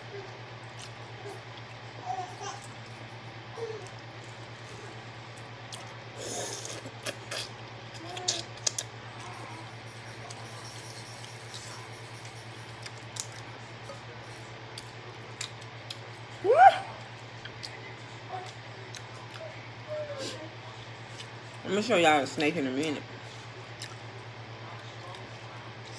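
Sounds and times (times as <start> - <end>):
steady low hum: 0.0 - 25.9
dog whimpering: 19.4 - 20.5.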